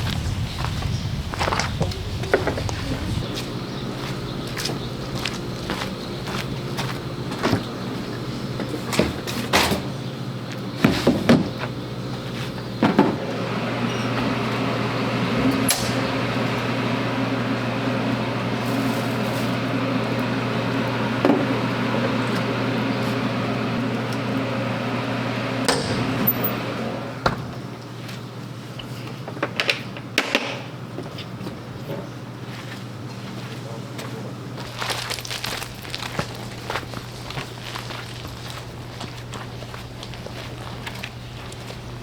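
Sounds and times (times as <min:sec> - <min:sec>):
machine hum with hiss: 0:00.0 - 0:28.0.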